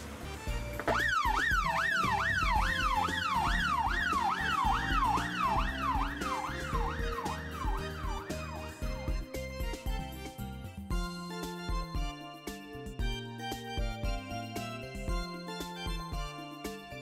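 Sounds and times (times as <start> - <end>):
music with steady beat: 0.0 - 17.0
siren yelping: 0.9 - 9.0.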